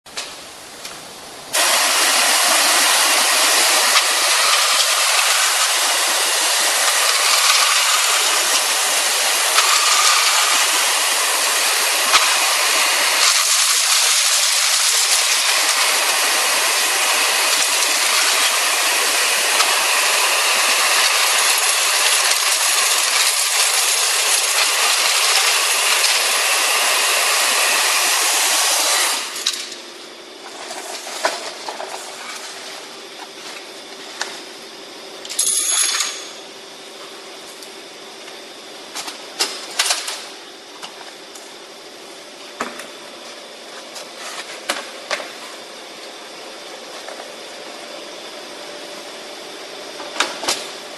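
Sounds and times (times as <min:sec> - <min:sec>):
vacuum cleaner air hiss: 0:01.4 - 0:29.8.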